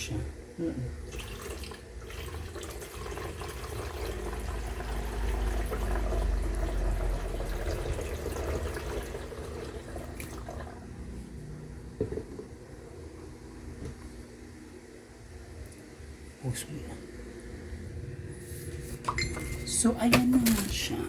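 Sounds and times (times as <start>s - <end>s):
water running from a tap: 1.1s - 10.8s.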